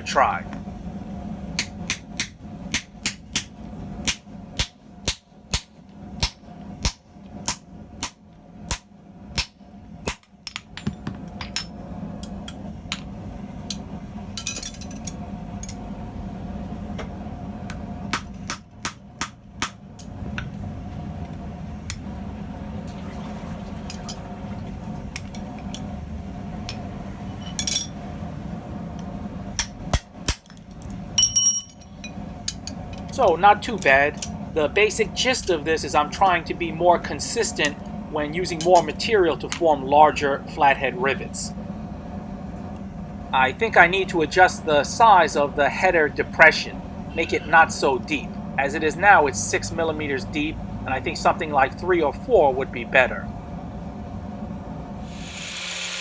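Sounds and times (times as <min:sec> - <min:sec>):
steady low hum: 0:00.0 - 0:56.0
hammer striking hot rivet: 0:01.6 - 0:11.7, 0:18.1 - 0:20.0.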